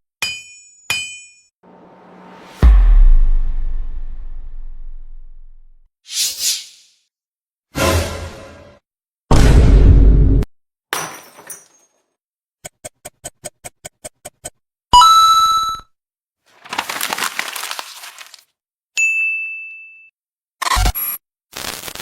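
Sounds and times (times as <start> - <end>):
crackling shattering noise: 16.6 - 18.4.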